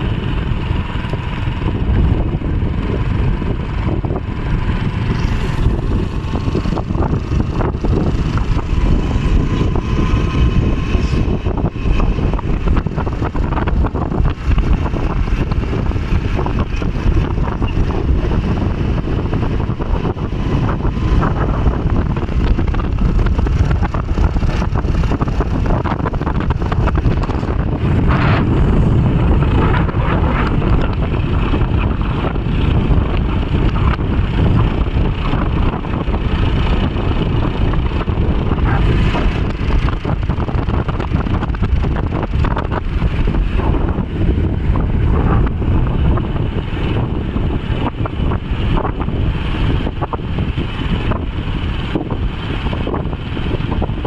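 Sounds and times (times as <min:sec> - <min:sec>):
vehicle noise: 0:00.0 - 0:54.0
wind rumble on microphone: 0:00.0 - 0:54.0.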